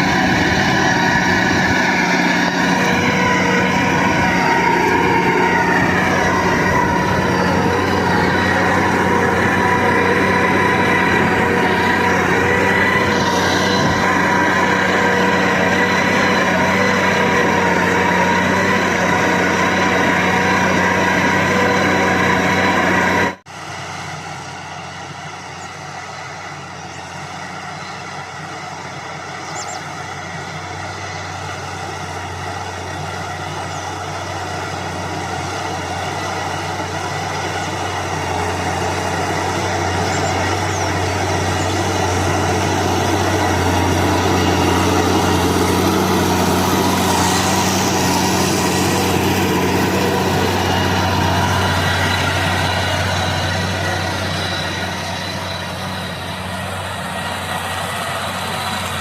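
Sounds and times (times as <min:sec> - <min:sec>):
tractor diesel engine running: 0:00.0 - 0:59.0.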